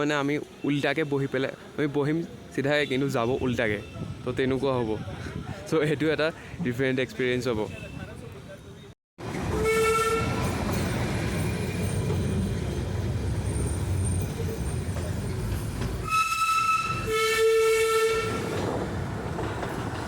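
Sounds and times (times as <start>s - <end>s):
train rumbling: 9.2s - 20.0s
train whistle blasts: 9.5s - 10.5s, 16.0s - 18.5s.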